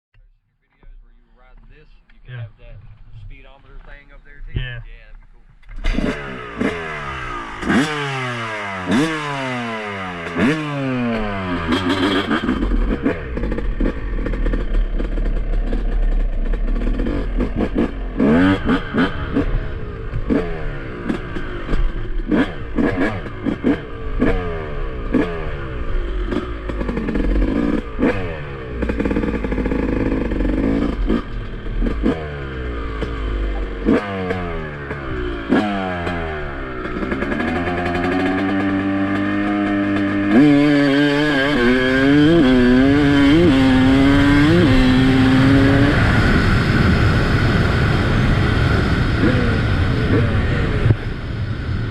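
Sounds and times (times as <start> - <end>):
two-stroke engine revving: 5.6 - 51.7.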